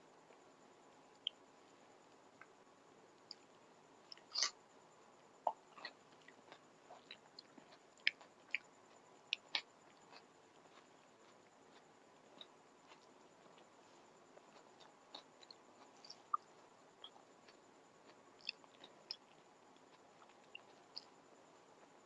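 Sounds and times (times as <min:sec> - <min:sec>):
person chewing: 0:04.1 - 0:04.6, 0:05.5 - 0:13.6, 0:14.4 - 0:21.2.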